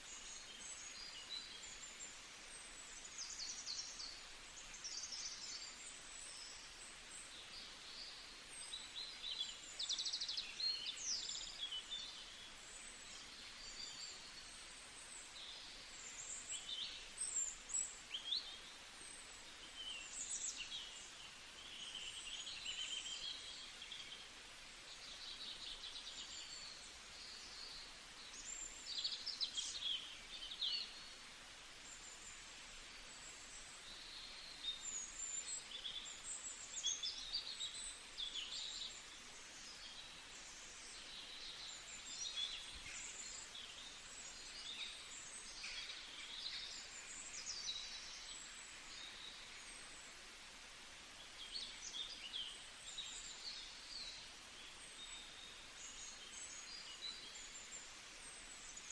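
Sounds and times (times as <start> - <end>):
background hiss: 0.0 - 58.9
songbirds chirping and singing: 33.8 - 50.2.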